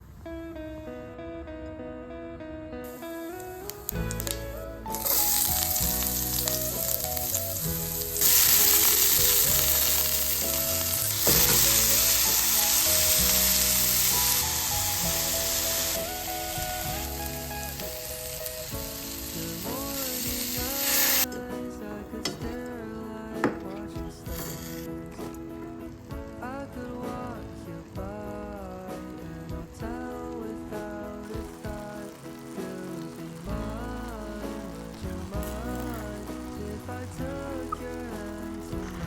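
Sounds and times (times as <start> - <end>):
background music: 0.0 - 39.0
food sizzling in a frying pan: 2.9 - 21.3, 29.9 - 39.0.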